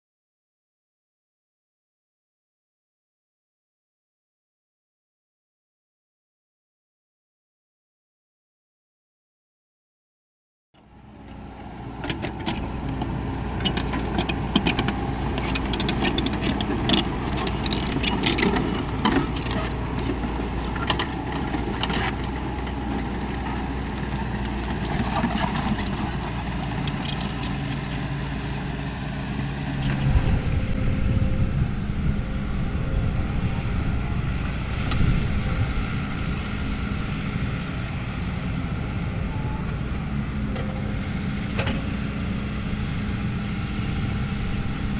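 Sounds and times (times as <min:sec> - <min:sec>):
excavator diesel engine running: 0:10.8 - 0:44.9.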